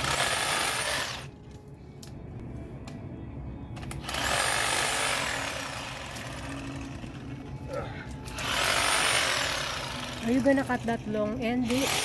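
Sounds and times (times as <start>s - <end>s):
power trimmer cutting branches: 0.0s - 1.3s, 3.8s - 7.4s, 8.2s - 12.0s.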